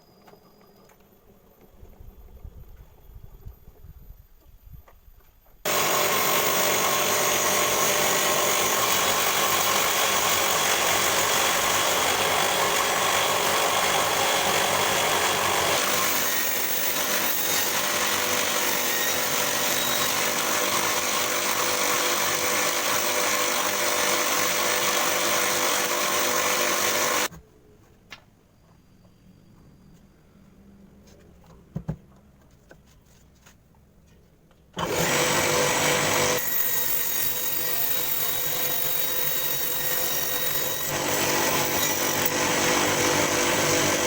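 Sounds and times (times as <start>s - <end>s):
table saw cutting wood: 5.7s - 27.3s, 34.8s - 44.0s.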